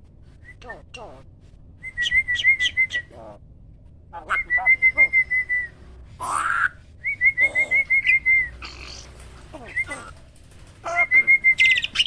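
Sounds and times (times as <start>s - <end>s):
starling singing: 6.2s - 10.2s, 10.8s - 12.0s.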